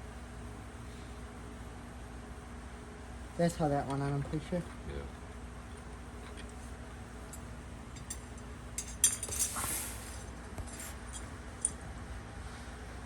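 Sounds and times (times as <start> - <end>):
metal tools clinking: 8.0 - 9.7
metal scrape: 9.0 - 11.0.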